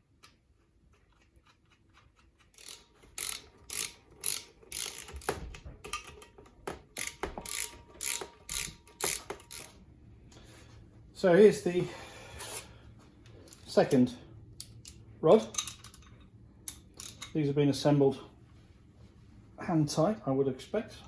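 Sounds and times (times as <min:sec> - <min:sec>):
ratchet wrench clicking: 0:02.6 - 0:06.2, 0:06.9 - 0:09.8, 0:16.7 - 0:17.3.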